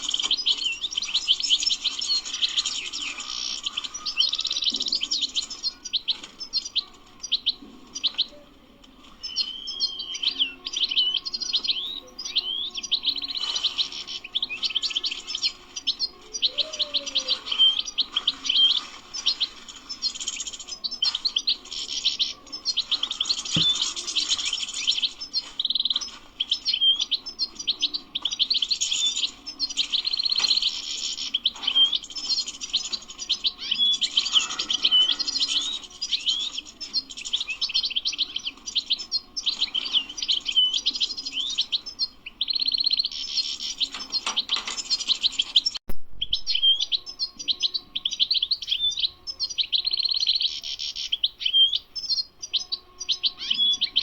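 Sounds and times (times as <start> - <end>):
finch twittering song: 0.0 - 8.4, 9.0 - 54.0.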